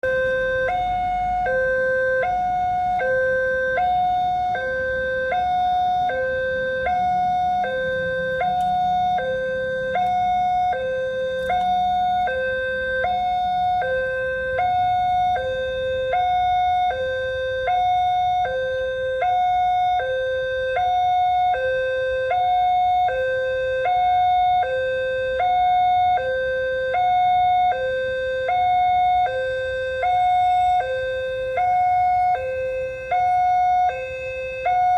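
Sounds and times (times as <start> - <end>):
two-tone crossing warning siren: 0.0 - 34.9.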